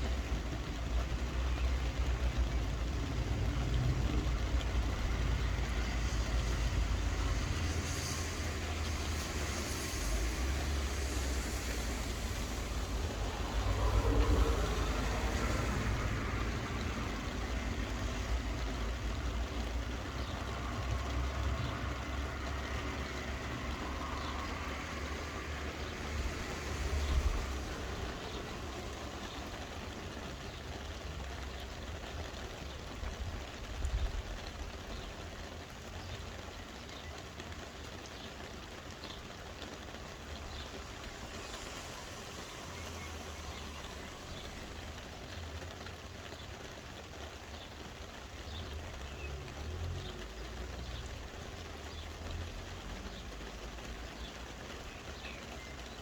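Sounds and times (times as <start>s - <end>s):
steady rain hissing: 0.0s - 56.0s
low rumble: 2.2s - 17.3s.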